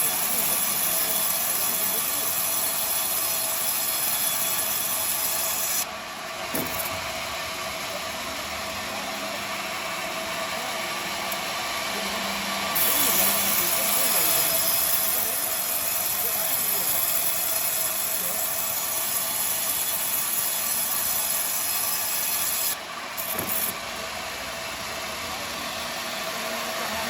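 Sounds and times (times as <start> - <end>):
high hiss of saw cutting: 0.0 - 5.9, 10.9 - 23.8
band saw humming: 0.0 - 27.0.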